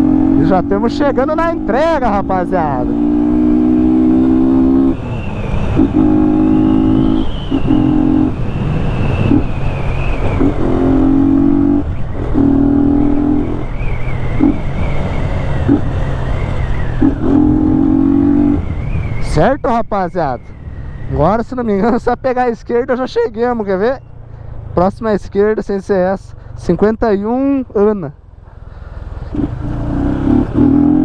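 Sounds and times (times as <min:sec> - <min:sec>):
motorcycle engine running: 0:00.0 - 0:18.9, 0:27.3 - 0:31.0.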